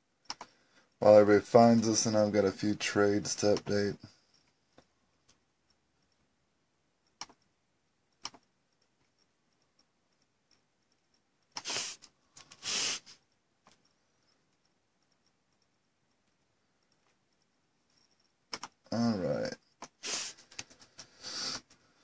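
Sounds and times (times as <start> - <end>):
sharp clicks: 0.2 - 0.6, 3.2 - 6.2, 7.0 - 7.5, 8.1 - 21.8.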